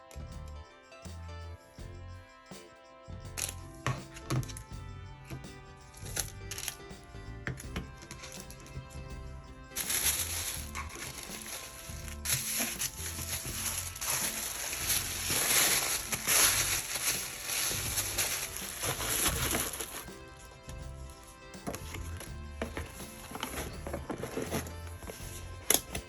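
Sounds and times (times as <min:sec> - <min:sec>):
background music: 0:00.0 - 0:26.0
packaging crinkling and rustling: 0:09.8 - 0:20.1, 0:22.6 - 0:25.9.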